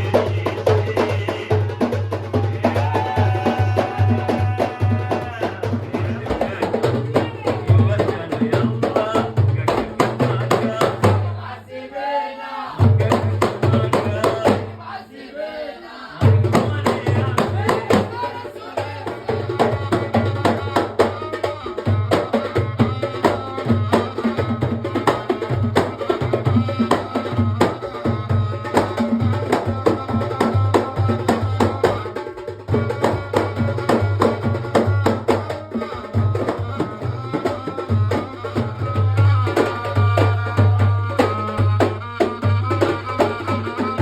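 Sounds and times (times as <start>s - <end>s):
hand drum beat: 0.0s - 11.4s, 12.8s - 14.8s, 16.2s - 44.0s
folk-style music: 19.8s - 44.0s.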